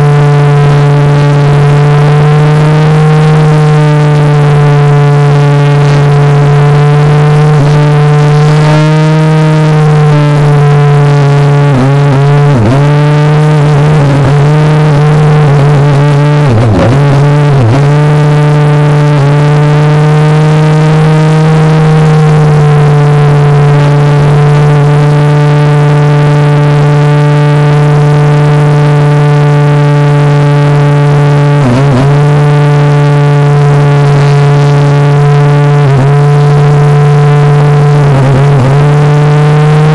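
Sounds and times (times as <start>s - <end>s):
electric motor and propeller whining: 0.0s - 39.9s.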